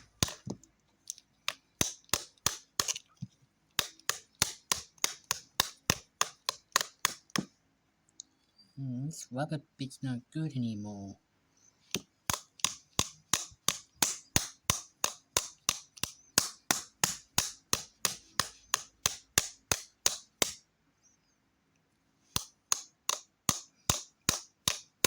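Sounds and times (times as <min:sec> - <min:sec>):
plastic remote smacking surface: 0:00.0 - 0:03.0.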